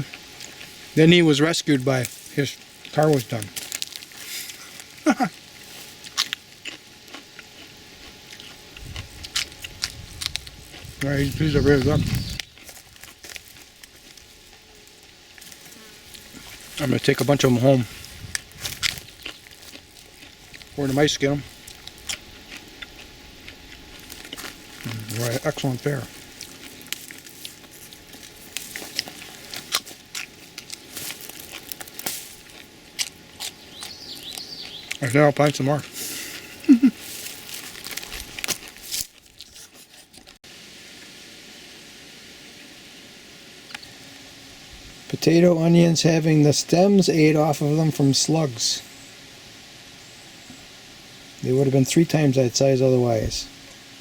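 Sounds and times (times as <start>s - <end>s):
person chewing crunchy food: 0.0s - 1.0s, 2.1s - 40.4s
foliage rustling: 8.9s - 22.4s, 23.8s - 34.9s, 35.8s - 40.1s.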